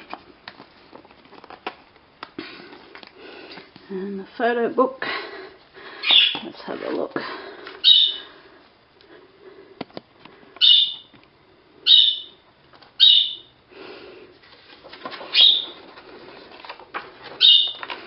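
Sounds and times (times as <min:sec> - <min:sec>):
budgerigars chirping: 0:06.0 - 0:06.4, 0:07.8 - 0:08.3, 0:10.6 - 0:11.1, 0:11.9 - 0:12.4, 0:13.0 - 0:13.5, 0:15.3 - 0:15.8, 0:17.4 - 0:17.8.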